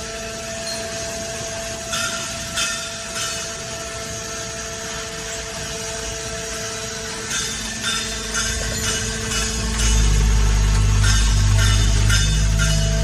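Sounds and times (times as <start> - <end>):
hydraulic baler humming: 0.0 - 13.0.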